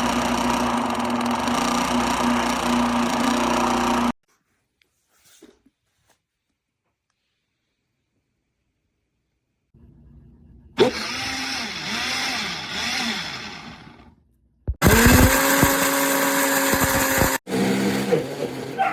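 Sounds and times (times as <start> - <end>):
blender motor running: 0.0 - 4.2, 10.8 - 14.1, 14.7 - 18.8.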